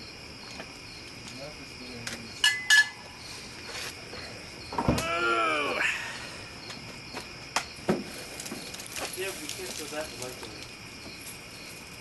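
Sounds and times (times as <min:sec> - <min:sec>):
crickets chirping: 0:00.0 - 0:12.0
person exclaiming: 0:05.0 - 0:06.1.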